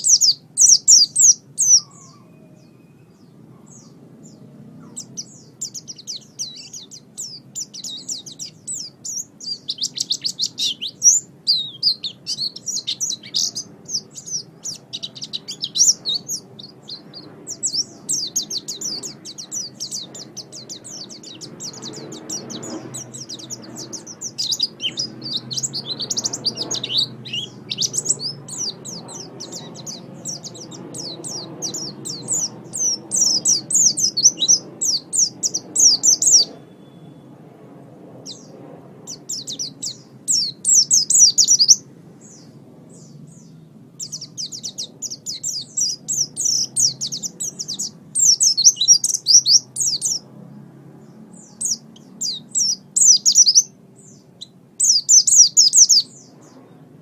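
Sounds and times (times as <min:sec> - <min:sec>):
bird twittering song: 0:00.0 - 0:37.4, 0:38.2 - 0:50.3, 0:51.0 - 0:57.0.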